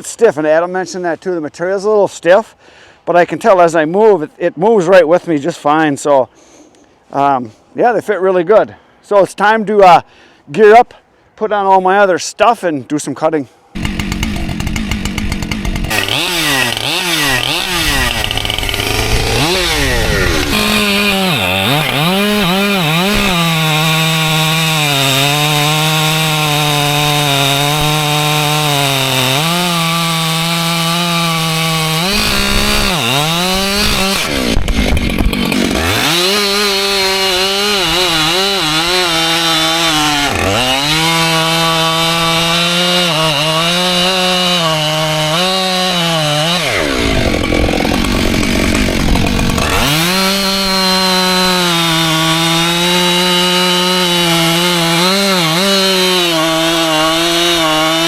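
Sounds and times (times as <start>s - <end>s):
chainsaw cutting logs: 13.7s - 58.0s.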